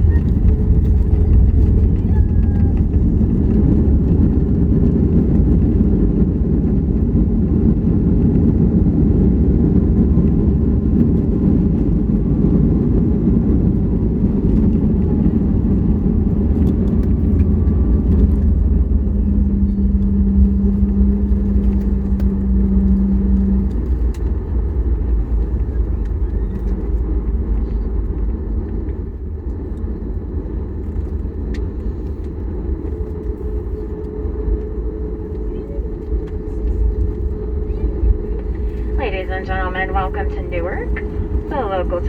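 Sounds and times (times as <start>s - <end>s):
jet engines rumbling: 0.0s - 42.0s
steady hum: 30.9s - 42.0s.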